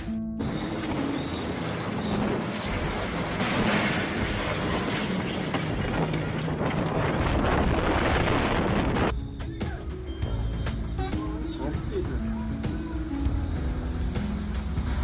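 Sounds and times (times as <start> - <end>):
strong storm wind blowing: 0.4 - 9.2.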